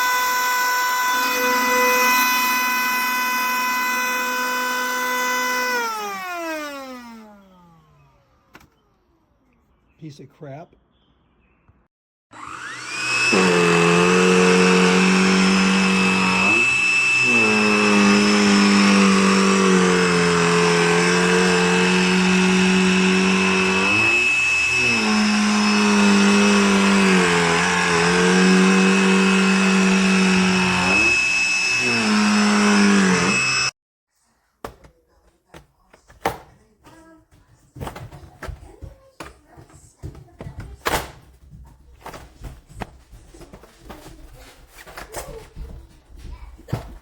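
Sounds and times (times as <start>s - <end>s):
handheld vacuum whining: 0.0s - 8.6s, 12.3s - 33.8s.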